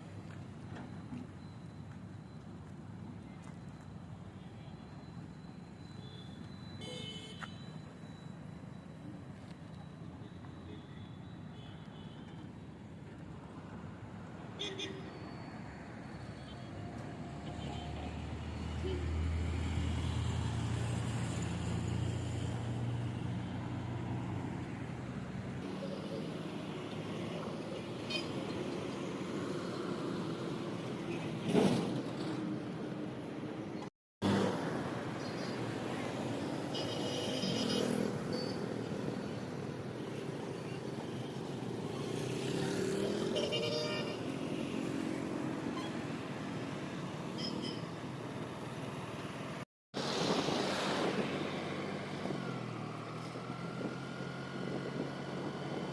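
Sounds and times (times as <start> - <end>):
road noise: 0.0 - 55.9
cars and motorbikes passing: 13.6 - 55.9.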